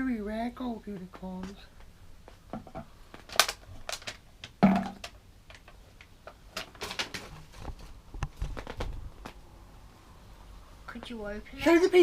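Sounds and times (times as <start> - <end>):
plastic toys and packaging handled: 3.2 - 9.0.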